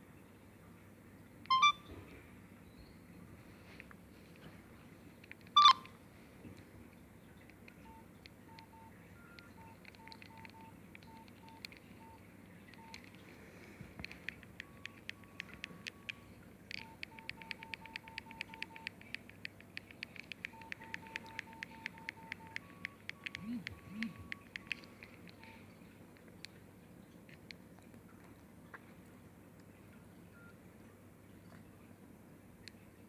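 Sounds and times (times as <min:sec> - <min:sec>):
phone key beeps: 0:01.5 - 0:01.8, 0:05.5 - 0:05.9, 0:07.7 - 0:13.2, 0:14.0 - 0:25.7
faint rapid clicking: 0:03.7 - 0:29.8.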